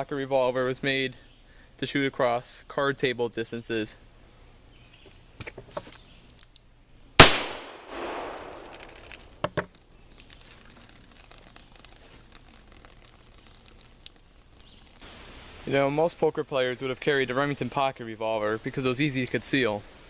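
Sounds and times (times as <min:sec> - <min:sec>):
revolver gunshot: 0:07.2 - 0:09.1.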